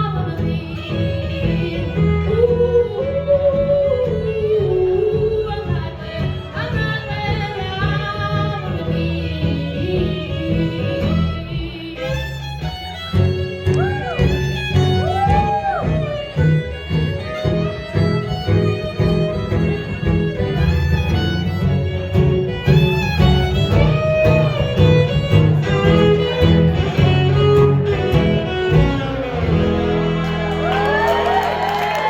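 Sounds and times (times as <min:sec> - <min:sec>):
live band playing instrumental: 0:00.0 - 0:32.0.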